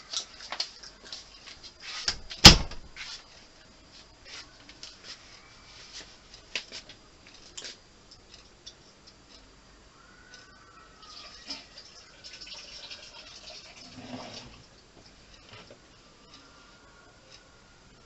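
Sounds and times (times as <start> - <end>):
door banging shut: 2.1 - 2.9.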